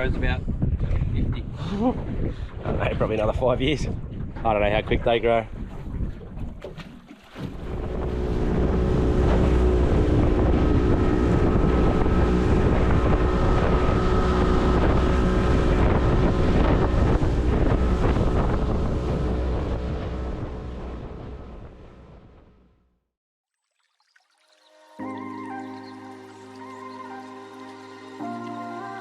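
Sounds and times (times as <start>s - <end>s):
wind buffeting microphone: 0.0s - 22.5s
outboard motor running: 5.6s - 22.4s.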